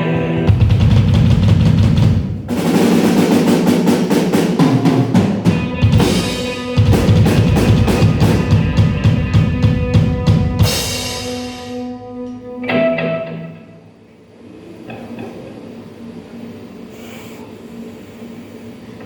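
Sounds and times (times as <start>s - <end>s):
live rock band playing: 0.0s - 2.3s, 5.0s - 13.7s
drum kit hits and rolls: 0.4s - 13.4s.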